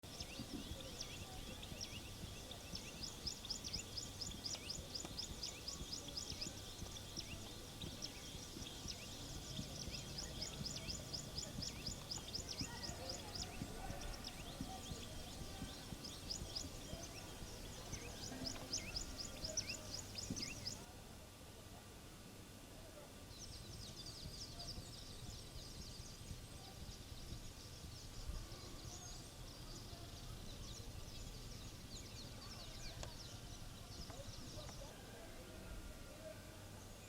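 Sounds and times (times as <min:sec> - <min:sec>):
low steady background noise: 0:00.0 - 0:37.0.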